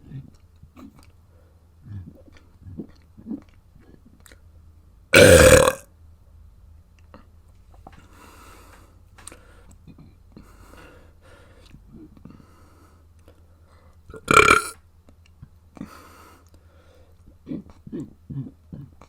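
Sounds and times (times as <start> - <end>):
person burping loudly: 5.2 - 5.8, 14.1 - 14.8.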